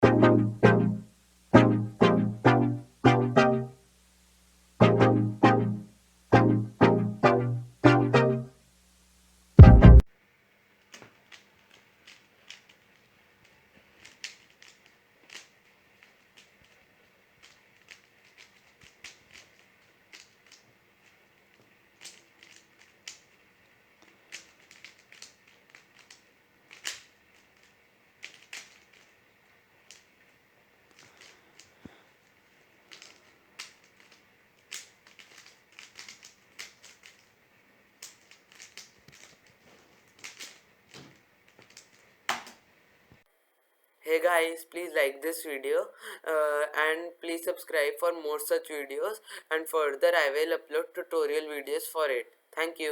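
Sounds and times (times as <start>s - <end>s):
plastic puzzle cube clicking: 10.8s - 42.6s.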